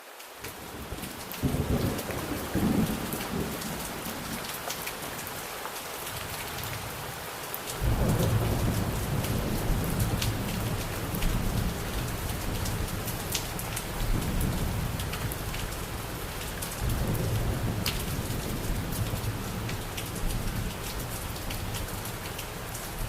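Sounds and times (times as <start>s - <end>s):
heavy rain with pattering drops: 0.0s - 23.0s
rolling thunder: 7.8s - 22.2s.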